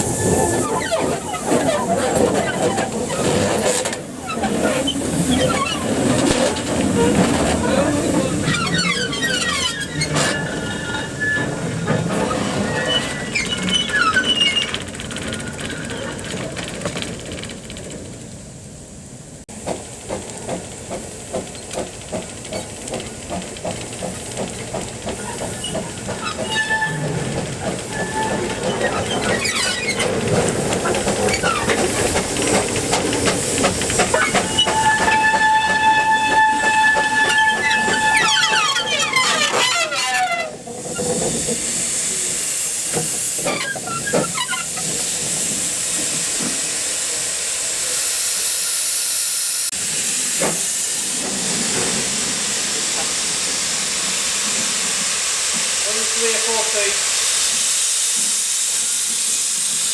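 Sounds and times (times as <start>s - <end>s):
steam hissing: 0.0s - 16.8s, 18.4s - 59.9s
steam locomotive exhaust beat: 19.5s - 59.9s
two-tone steam whistle: 34.4s - 38.5s.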